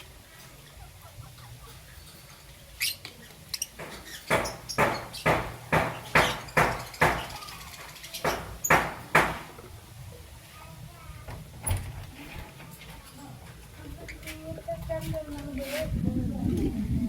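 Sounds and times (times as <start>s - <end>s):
bird harsh chirps: 0.6s - 9.4s.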